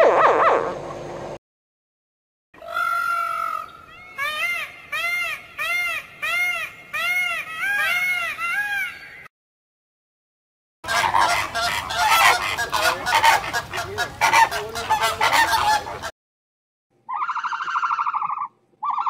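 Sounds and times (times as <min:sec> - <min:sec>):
animals calling: 0:02.6 - 0:09.3, 0:10.9 - 0:16.1, 0:17.1 - 0:19.0.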